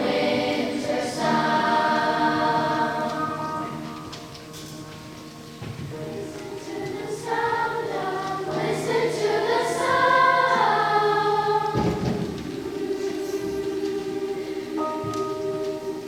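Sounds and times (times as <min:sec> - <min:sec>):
children's choir singing: 0:00.0 - 0:16.0.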